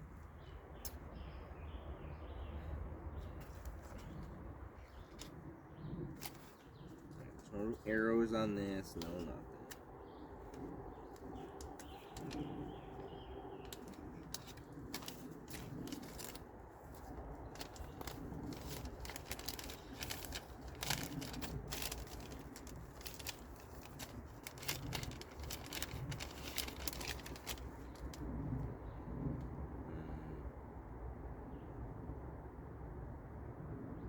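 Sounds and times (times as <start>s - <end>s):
plastic packaging crinkling: 11.4s - 12.4s, 13.6s - 28.2s.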